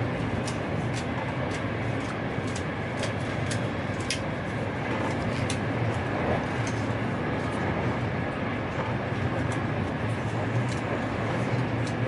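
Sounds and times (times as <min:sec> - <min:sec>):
train rumbling: 0:00.0 - 0:12.0.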